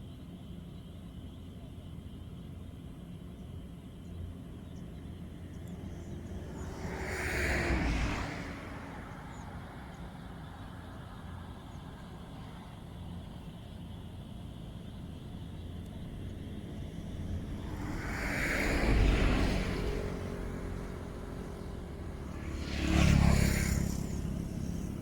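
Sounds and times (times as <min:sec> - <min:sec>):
low engine drone: 0:00.4 - 0:25.0
vehicle passing by: 0:05.6 - 0:11.1, 0:16.6 - 0:25.0.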